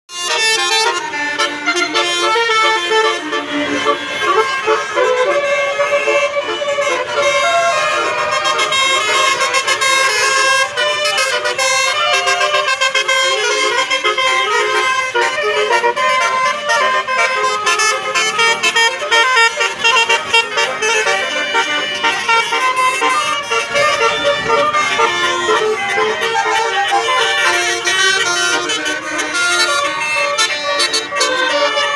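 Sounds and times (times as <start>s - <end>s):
multi-tone air horn melody: 0.1s - 31.9s.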